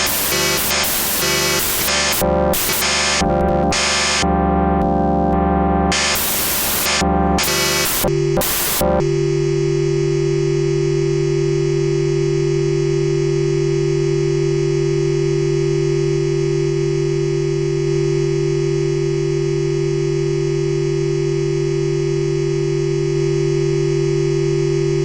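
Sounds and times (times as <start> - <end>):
synthesizer drone tone: 0.0 - 13.0.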